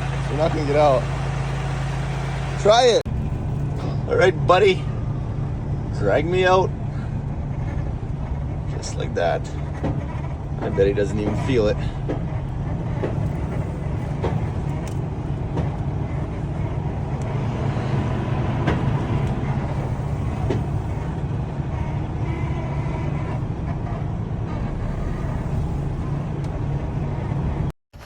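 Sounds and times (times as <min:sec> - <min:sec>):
vehicle engine running: 0:00.0 - 0:28.0
faint clicks and knocks: 0:09.4 - 0:17.5.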